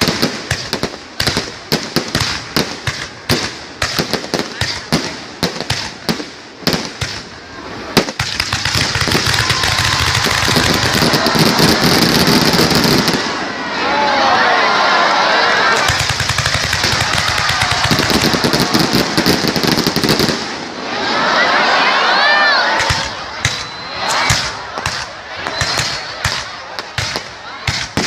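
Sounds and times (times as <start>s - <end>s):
continuous rush of fireworks: 0.0s - 13.6s, 15.7s - 20.8s, 22.8s - 28.0s
fireworks bangs: 0.0s - 13.6s, 15.7s - 20.9s, 22.8s - 28.0s.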